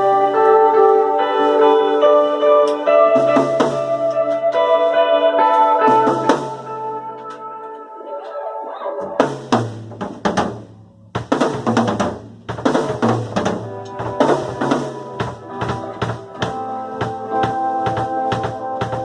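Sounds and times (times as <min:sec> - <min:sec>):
sustained chords: 0:00.0 - 0:09.4
drum kit beat: 0:02.8 - 0:04.7, 0:05.5 - 0:07.4, 0:09.0 - 0:19.0.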